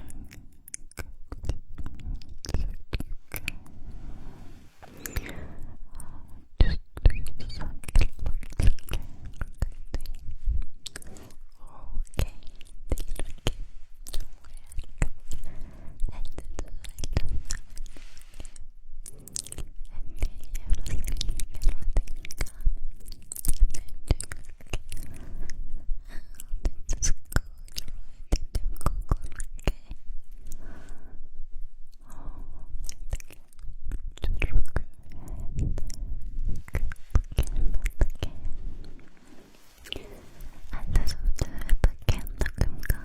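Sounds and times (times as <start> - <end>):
wet mouth clicks and smacks: 0.0 - 3.7, 6.6 - 25.2, 26.2 - 30.0, 32.8 - 38.5, 40.7 - 43.0.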